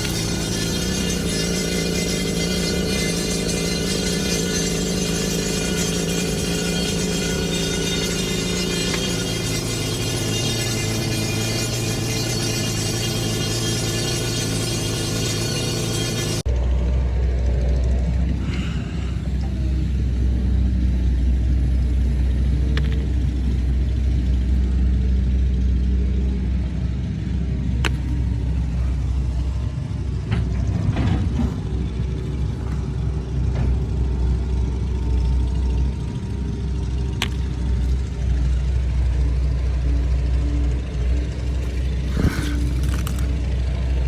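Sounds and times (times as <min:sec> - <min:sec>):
sharp metallic clanks: 0:00.0 - 0:16.4
diesel engine running: 0:00.0 - 0:44.0.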